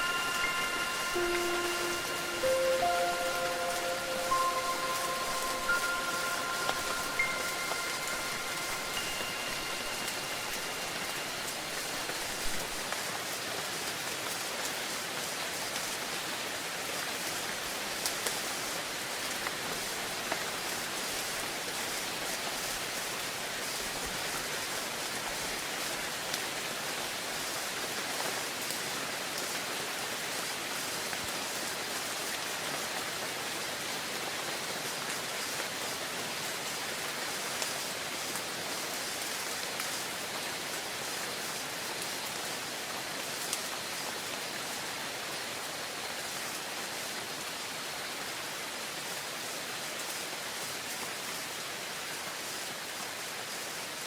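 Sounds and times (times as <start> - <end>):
faint ringing tone: 0.0 - 12.8
steady rain falling: 0.0 - 54.0.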